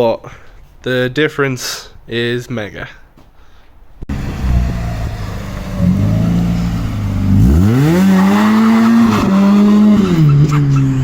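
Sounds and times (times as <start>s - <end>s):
car engine revving: 4.1s - 10.5s.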